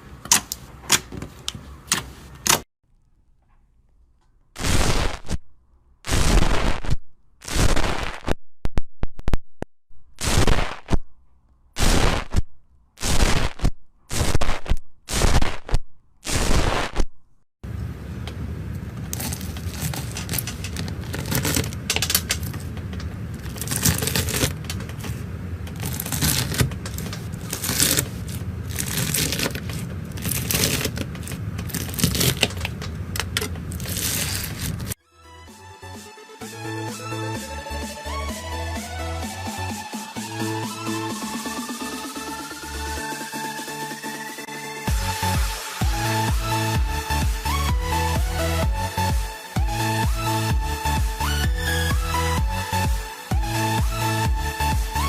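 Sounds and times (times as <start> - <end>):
slime squishing and crackling: 19.1 - 21.8, 23.4 - 24.6, 25.7 - 35.0.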